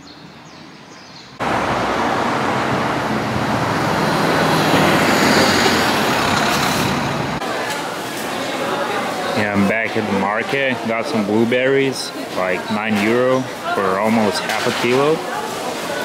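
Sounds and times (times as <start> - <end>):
road traffic noise: 0.0 - 16.0
motor vehicle running close by: 1.4 - 7.4.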